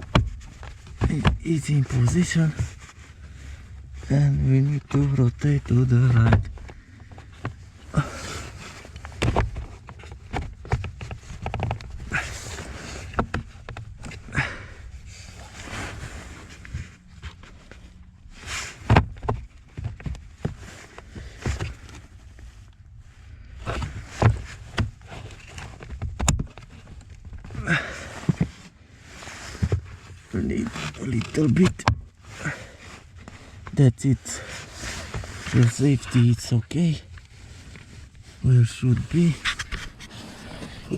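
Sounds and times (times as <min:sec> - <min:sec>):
plastic scraping: 0:00.0 - 0:40.9.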